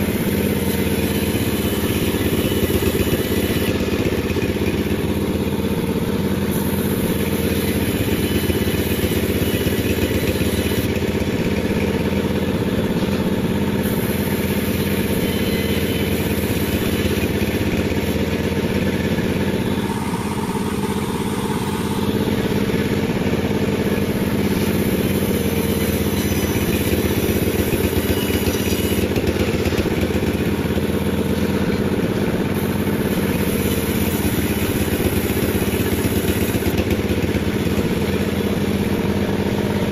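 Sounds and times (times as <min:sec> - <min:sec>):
sawmill engine running: 0:00.0 - 0:39.9.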